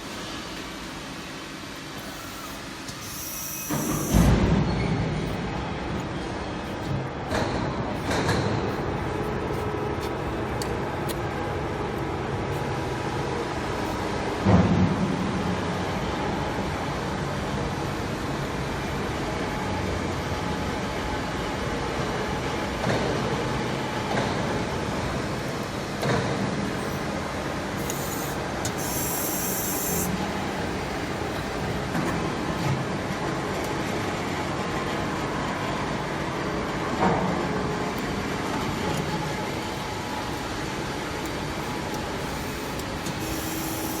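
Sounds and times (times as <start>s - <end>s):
press brake machine running: 0.0s - 12.8s, 23.9s - 36.3s, 37.7s - 44.0s.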